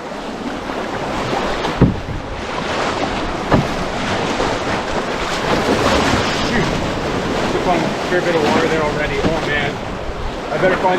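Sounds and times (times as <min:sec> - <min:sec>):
whitewater rushing: 0:00.0 - 0:10.9
wind buffeting microphone: 0:00.0 - 0:10.9
dull thumps: 0:00.9 - 0:02.4, 0:03.2 - 0:05.8.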